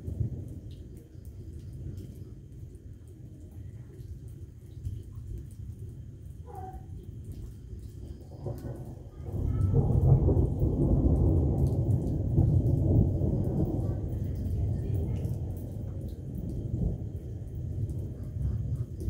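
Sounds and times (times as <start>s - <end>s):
rain falling: 0.0s - 19.0s
thunder rumbling: 0.0s - 19.0s.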